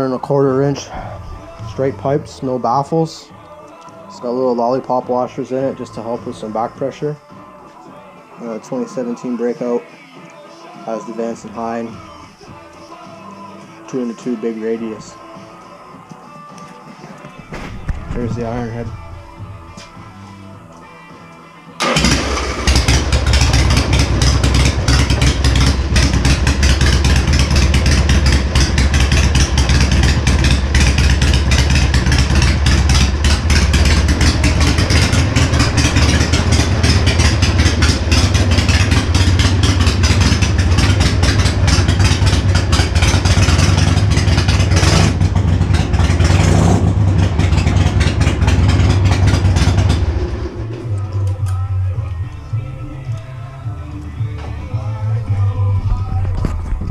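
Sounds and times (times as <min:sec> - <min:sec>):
motorcycle engine exhaust: 0:21.8 - 0:51.1.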